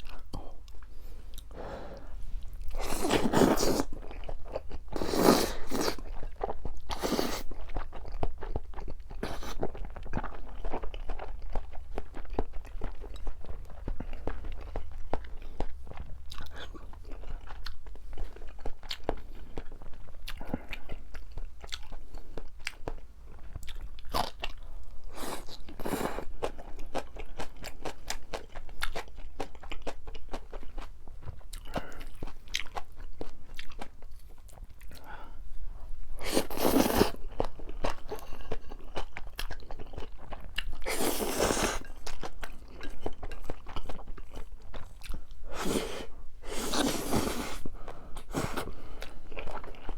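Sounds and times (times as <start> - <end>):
noodles being chewed: 36.2 - 49.9.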